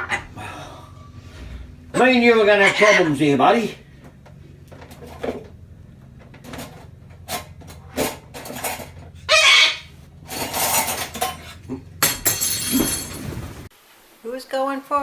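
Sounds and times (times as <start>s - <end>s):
tableware clinking and clattering: 10.3s - 13.6s.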